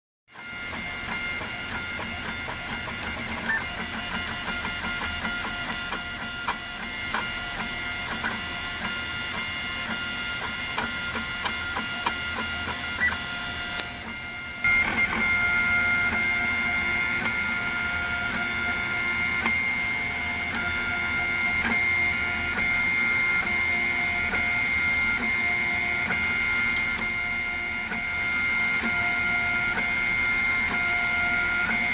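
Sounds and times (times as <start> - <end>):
stepper motors whining: 0.4 - 25.4.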